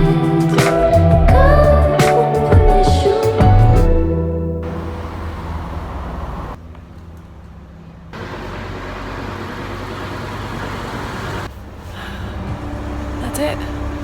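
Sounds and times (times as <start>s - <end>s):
road vehicle rumble and hiss: 4.6s - 6.7s, 8.1s - 14.0s.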